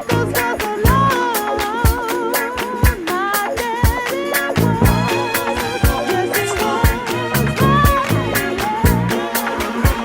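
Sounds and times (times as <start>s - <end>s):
repeating bass line: 0.9s - 1.2s, 4.6s - 10.0s
wavering high melody: 4.4s - 10.0s.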